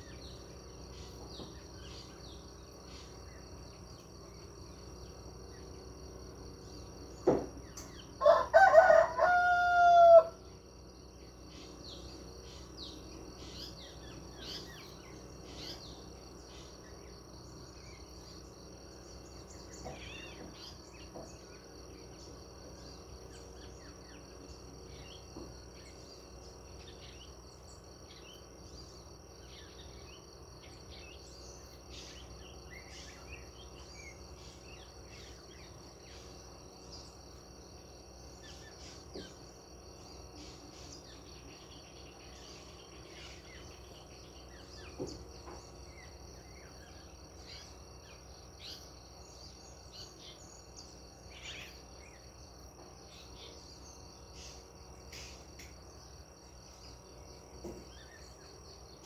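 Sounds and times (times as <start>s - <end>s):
insect trill: 0.0s - 59.0s
bird chirps: 11.5s - 29.0s.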